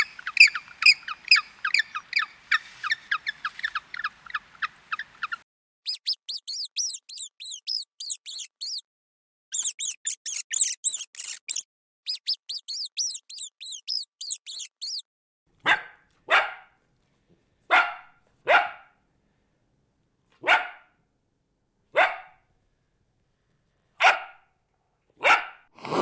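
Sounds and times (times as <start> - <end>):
high-pitched chirps: 0.0 - 8.8, 9.5 - 15.0
dog barking: 15.6 - 16.7, 17.7 - 18.9, 20.4 - 20.9, 22.0 - 22.4, 24.0 - 24.4, 25.2 - 25.6.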